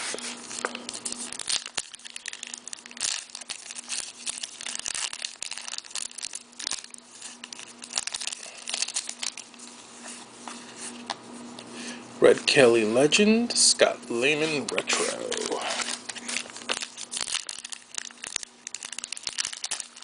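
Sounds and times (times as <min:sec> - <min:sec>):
card pack wrapper tearing and crinkling: 0:00.0 - 0:09.8, 0:14.3 - 0:20.0.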